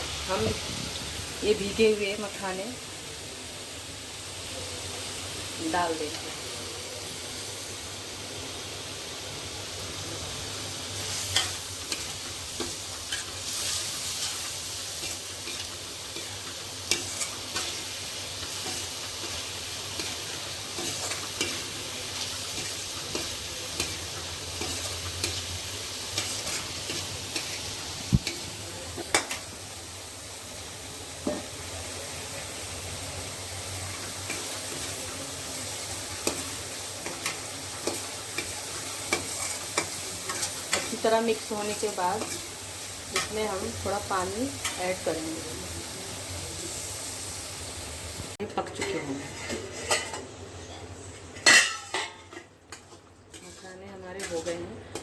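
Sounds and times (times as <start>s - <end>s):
food sizzling in oil: 0.0s - 55.0s.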